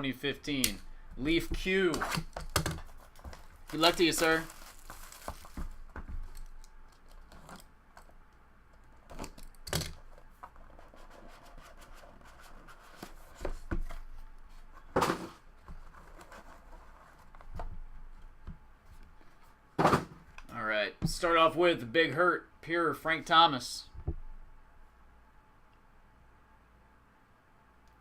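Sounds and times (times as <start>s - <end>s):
cardboard and plastic scraping: 1.2s - 7.6s, 10.4s - 17.8s.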